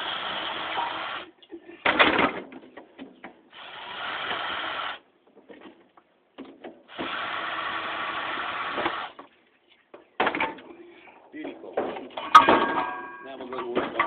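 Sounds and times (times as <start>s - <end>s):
power drill driving screws: 0.0s - 1.3s, 3.5s - 5.0s, 6.9s - 9.2s.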